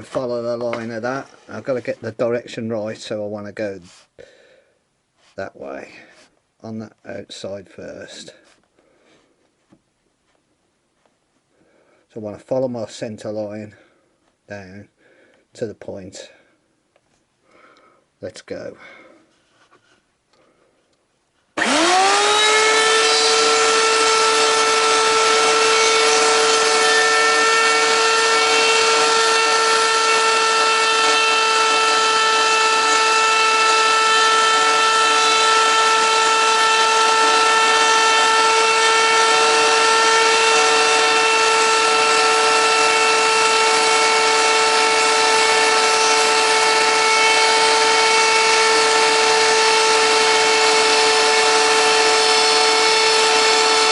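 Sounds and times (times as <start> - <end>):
router whining while cutting wood: 21.6 - 53.9.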